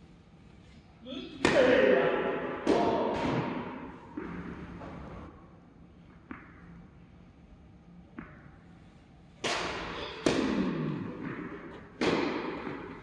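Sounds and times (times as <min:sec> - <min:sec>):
racket hitting tennis ball: 0:01.4 - 0:05.2, 0:09.4 - 0:13.0
tennis ball bouncing on court: 0:02.6 - 0:05.1, 0:06.2 - 0:06.8, 0:08.1 - 0:08.6, 0:09.4 - 0:13.0.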